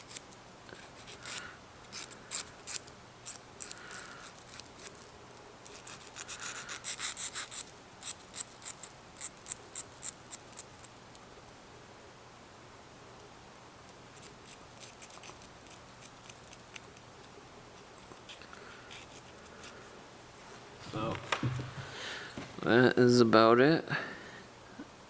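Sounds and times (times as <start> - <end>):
needle file strokes on metal: 0.0 - 10.9.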